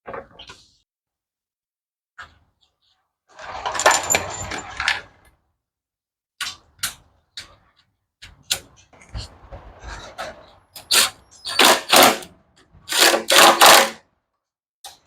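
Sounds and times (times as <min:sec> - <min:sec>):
metal tools clattering: 0:03.4 - 0:05.2.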